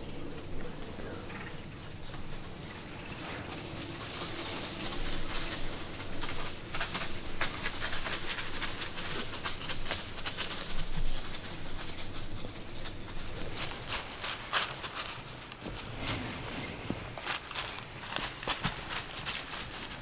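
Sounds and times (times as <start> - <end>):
footsteps crunching dry leaves: 12.9 - 16.2, 17.0 - 20.0.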